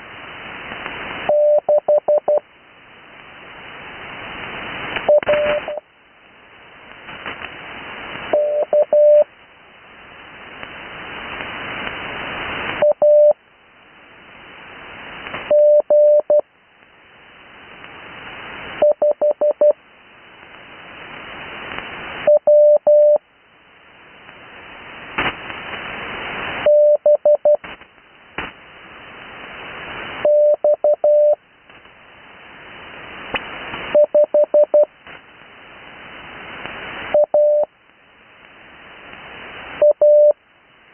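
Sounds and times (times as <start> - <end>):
radio band hiss: 0.0 - 40.9
morse code tone: 1.3 - 2.4, 5.1 - 5.8, 8.4 - 9.2, 15.5 - 16.4, 22.3 - 23.2, 26.7 - 27.6, 30.2 - 31.4, 37.2 - 37.7, 39.8 - 40.4.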